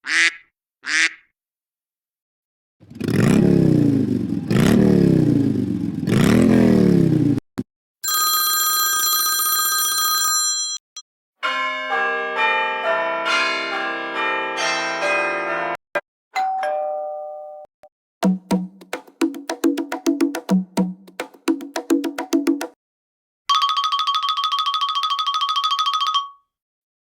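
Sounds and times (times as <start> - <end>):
melodic chime notes: 16.4 - 17.7.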